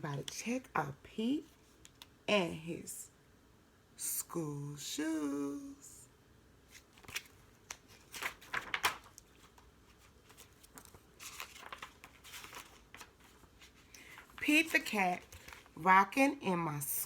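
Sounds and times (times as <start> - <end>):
book pages turning: 6.7 - 15.8
paper rustling and crinkling: 6.7 - 15.8.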